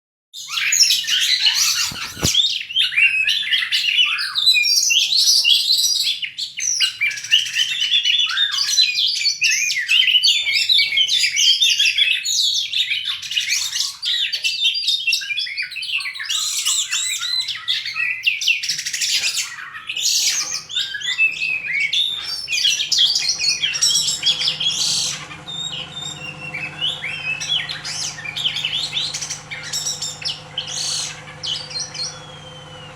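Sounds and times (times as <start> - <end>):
birds singing whistles and trills: 0.5 - 2.6, 15.4 - 32.9.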